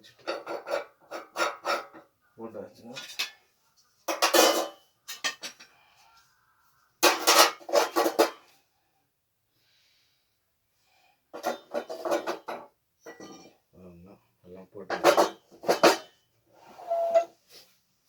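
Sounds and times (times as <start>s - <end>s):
metal stove parts clinking: 4.1s - 5.6s, 7.0s - 8.4s, 11.4s - 13.6s, 14.9s - 16.1s.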